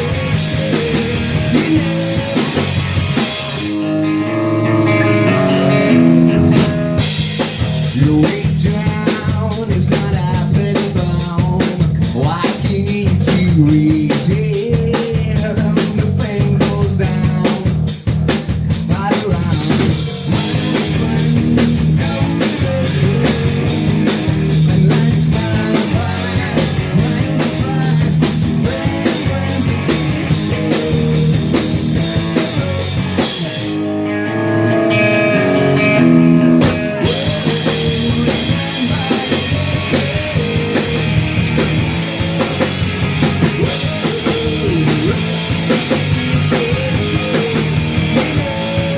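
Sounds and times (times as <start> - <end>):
drum kit and cymbals: 0.0 - 33.9, 34.7 - 48.9
bass guitar: 0.0 - 48.9
distorted guitar: 0.0 - 48.9
live rock band playing: 0.0 - 48.9
run of single guitar notes: 33.8 - 37.0.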